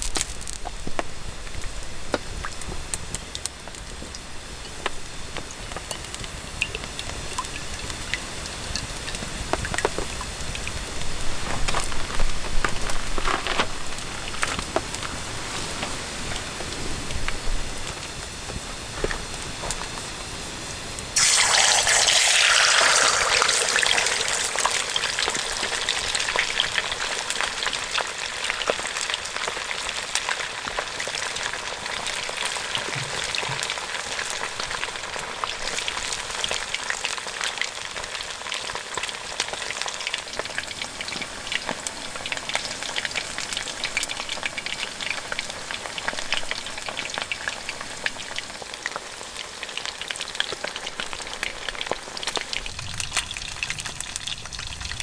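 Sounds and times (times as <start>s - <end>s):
chicken sizzling in hot oil: 0.0s - 55.0s.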